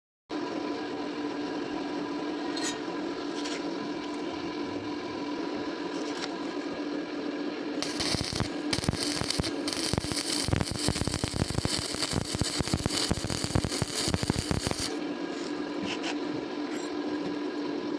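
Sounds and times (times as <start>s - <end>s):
electrical hum: 0.4s - 17.9s
welding arc crackle: 7.8s - 15.0s.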